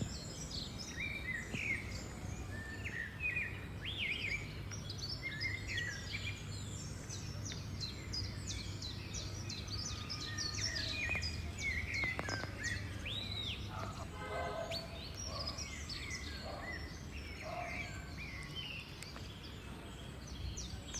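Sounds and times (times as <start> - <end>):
small birds chirping: 0.0 - 20.9.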